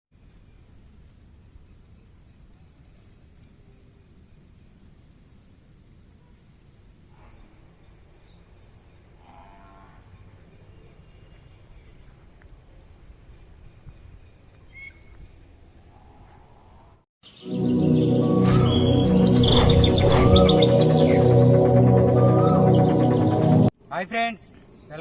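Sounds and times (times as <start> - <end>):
high bird chirps: 17.2 - 23.7
low rumble: 18.2 - 23.7.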